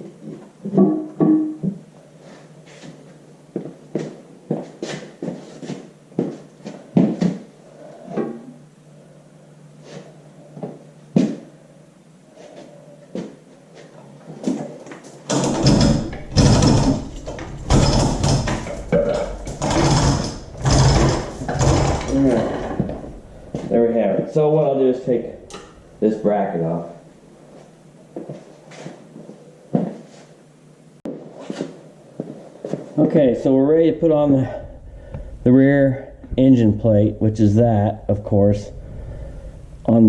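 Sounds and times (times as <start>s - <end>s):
loud continuous clattering: 15.3s - 22.4s.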